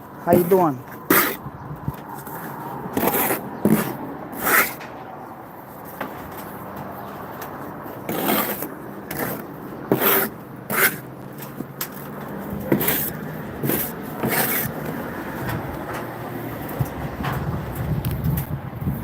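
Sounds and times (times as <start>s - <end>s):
tools scraping brick: 0.3s - 1.5s, 2.2s - 4.9s, 7.6s - 15.0s.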